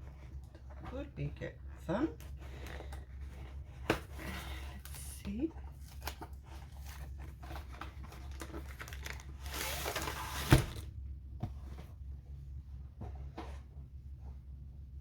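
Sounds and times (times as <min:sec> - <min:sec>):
packaging crinkling: 0:05.8 - 0:10.9.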